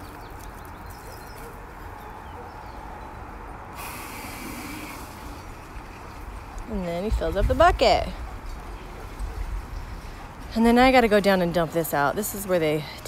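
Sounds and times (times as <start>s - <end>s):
hose water hissing into bucket: 3.8s - 5.6s.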